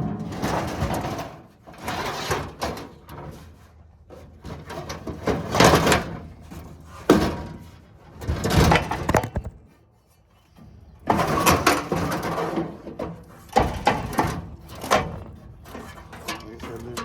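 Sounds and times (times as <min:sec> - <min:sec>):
metal scraping: 0:08.8 - 0:09.6.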